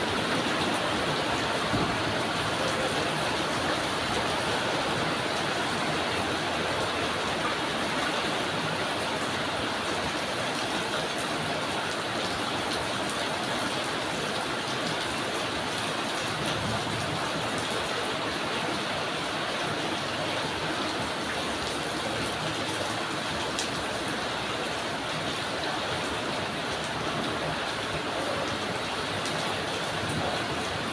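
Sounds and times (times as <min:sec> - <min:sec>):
drizzling rain hiss: 0:00.0 - 0:30.9
rain drops ticking: 0:00.0 - 0:30.9.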